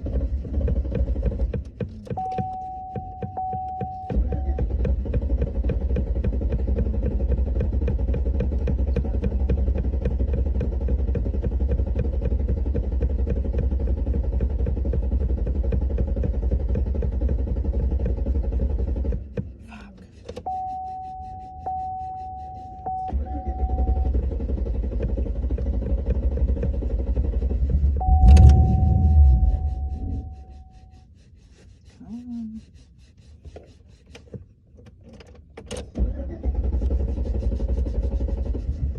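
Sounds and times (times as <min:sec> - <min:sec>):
starter motor cranking engine: 0:00.0 - 0:02.6, 0:03.5 - 0:19.5, 0:21.7 - 0:30.7, 0:35.4 - 0:38.9
steady high tone: 0:28.0 - 0:30.9.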